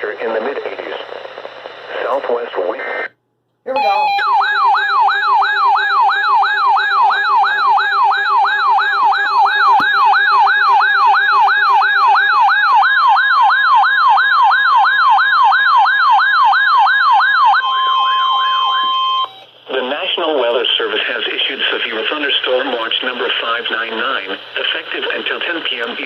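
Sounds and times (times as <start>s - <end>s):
rising electronic alarm sweep: 3.7s - 19.4s
steady alarm tone: 3.7s - 19.5s.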